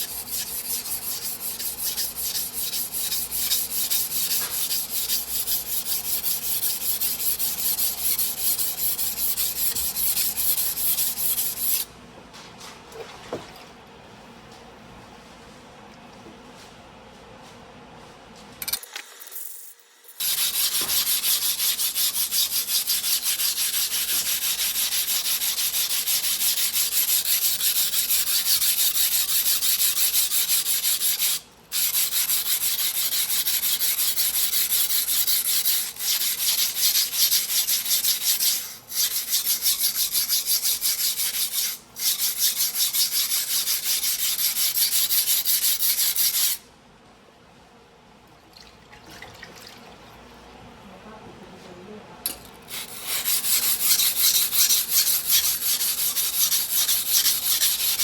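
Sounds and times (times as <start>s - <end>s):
blade scraping on whetstone: 0.0s - 11.9s, 20.2s - 46.6s, 52.7s - 58.0s.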